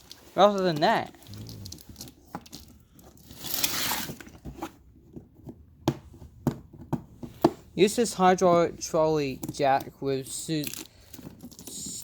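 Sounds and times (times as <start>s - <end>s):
packaging tearing: 3.2s - 4.4s.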